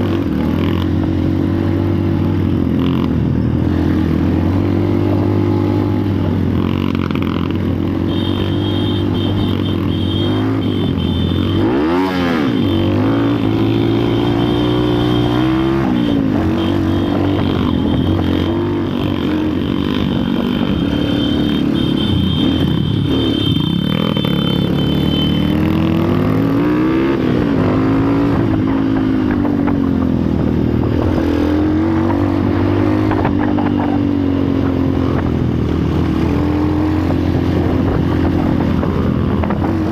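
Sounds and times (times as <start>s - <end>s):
vehicle engine revving: 6.6s - 29.8s.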